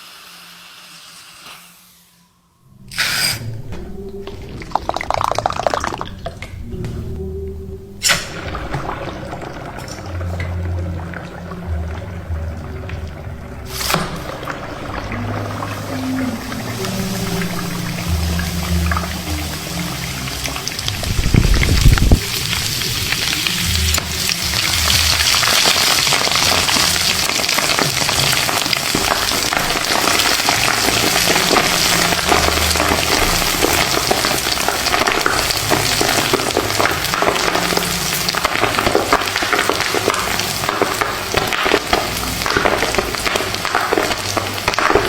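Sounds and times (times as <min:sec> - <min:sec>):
popcorn popping in hot oil: 0:12.8 - 0:45.0.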